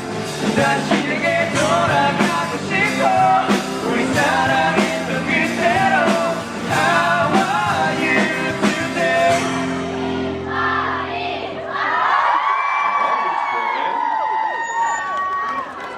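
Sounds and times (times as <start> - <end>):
drum hits: 0.0 - 10.0
rock band playing: 0.0 - 11.5
audience cheering: 11.7 - 15.9.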